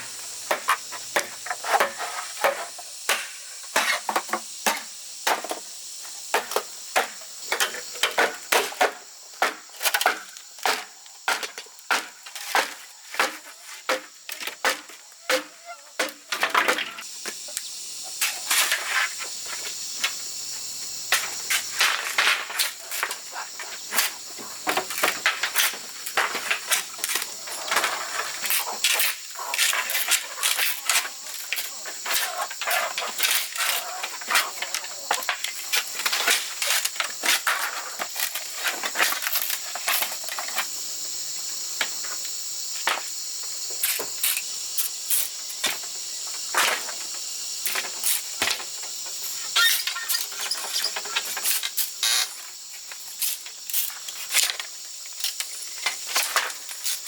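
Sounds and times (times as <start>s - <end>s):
insect buzzing: 0.0s - 57.0s.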